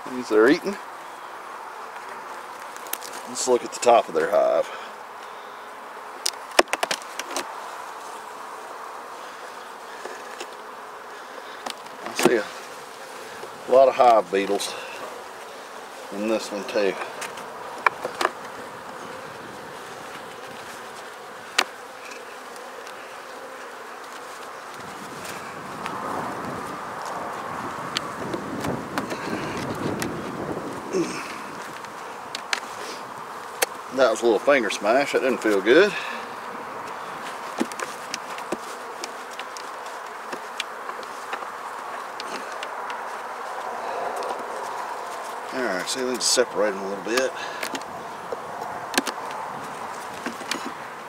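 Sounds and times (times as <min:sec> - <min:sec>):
honey bees buzzing: 0:00.0 - 0:51.0
clicks and taps of hive frames: 0:01.9 - 0:03.2, 0:06.2 - 0:07.6, 0:10.0 - 0:10.7, 0:11.3 - 0:15.2, 0:16.7 - 0:33.9, 0:36.8 - 0:46.4, 0:47.1 - 0:50.8.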